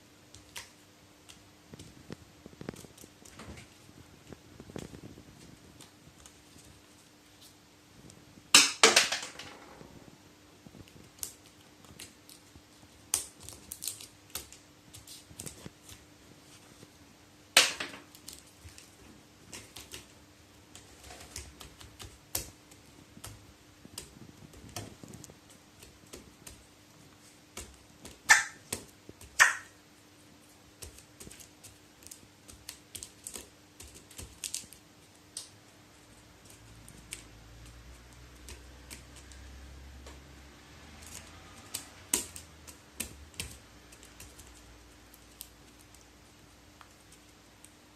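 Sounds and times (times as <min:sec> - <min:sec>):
sharp snaps: 0:00.3 - 0:03.6, 0:20.7 - 0:29.8, 0:30.8 - 0:35.6, 0:41.0 - 0:47.8
crow pecking on hard surface: 0:27.5 - 0:29.8.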